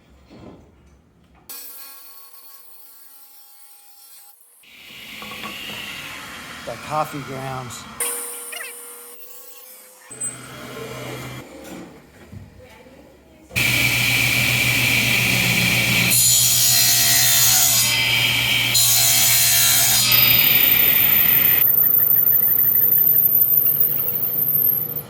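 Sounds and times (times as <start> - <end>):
power saw cutting wood: 13.6 - 22.1.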